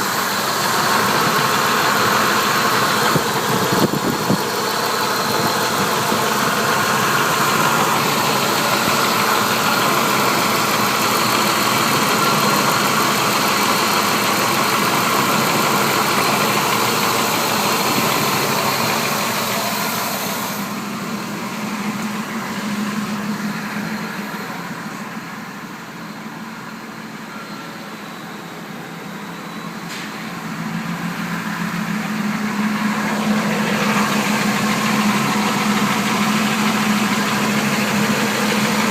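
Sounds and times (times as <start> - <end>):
engine ticking: 0.0 - 25.4, 30.2 - 38.9
engine idling: 0.0 - 38.9.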